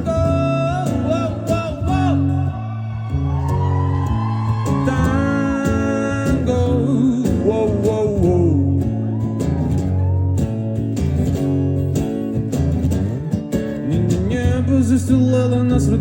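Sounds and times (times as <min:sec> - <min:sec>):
live band playing: 0:03.4 - 0:15.6.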